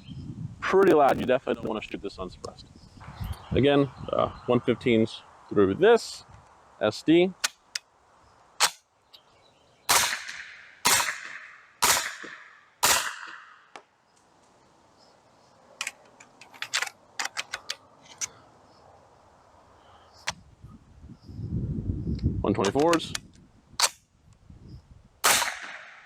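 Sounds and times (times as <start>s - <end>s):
suppressed gunshots: 9.9s - 13.5s, 25.2s - 26.0s.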